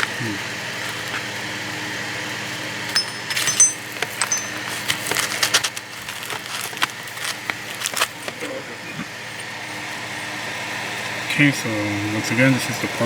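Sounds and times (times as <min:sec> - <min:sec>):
small metal parts clinking: 0:02.9 - 0:08.3
short ringing pings: 0:03.0 - 0:04.7.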